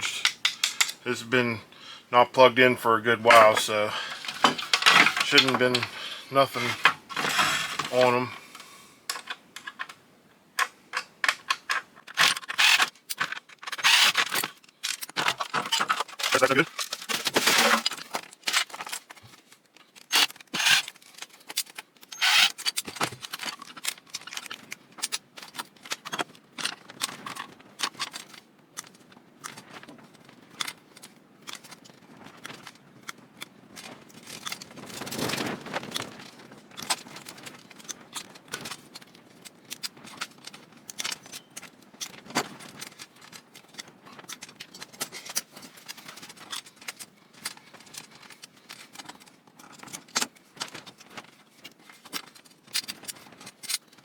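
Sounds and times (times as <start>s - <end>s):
hand tools clicking and snipping: 0.0s - 1.0s, 3.3s - 9.9s, 10.6s - 19.2s, 19.9s - 26.3s
small metal parts clinking: 0.0s - 1.0s, 3.3s - 9.9s, 10.9s - 19.2s, 19.9s - 26.7s
tool scraping: 3.2s - 9.2s, 11.7s - 14.4s, 15.2s - 18.0s, 20.1s - 21.0s, 22.1s - 22.6s.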